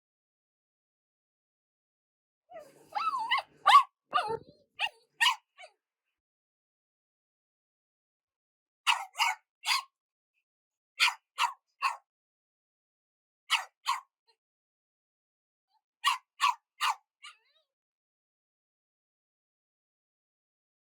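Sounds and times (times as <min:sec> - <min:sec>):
dog barking angrily: 0:02.6 - 0:05.4.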